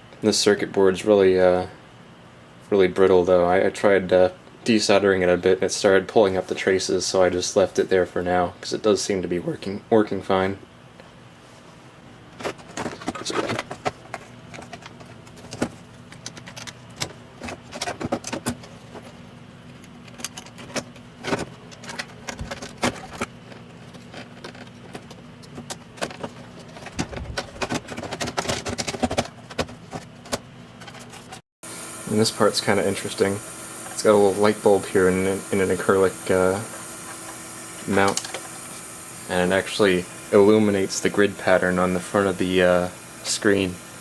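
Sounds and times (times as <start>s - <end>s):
metal and plastic parts clicking: 19.7s - 31.4s.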